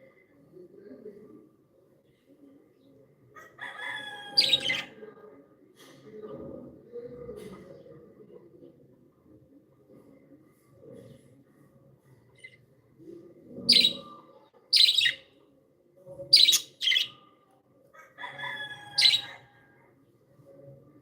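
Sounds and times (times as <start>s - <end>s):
budgerigar chirps: 13.7s - 14.0s, 14.8s - 15.2s, 16.4s - 17.1s.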